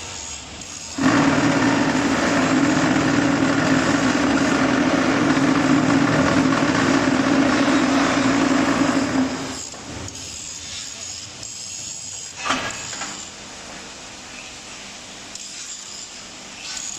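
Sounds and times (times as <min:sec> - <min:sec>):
block machine vibrating drone: 0:00.9 - 0:09.6.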